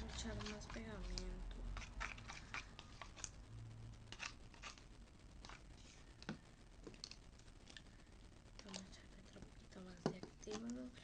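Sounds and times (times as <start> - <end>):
faint clicks and scrapes: 0.0 - 3.4.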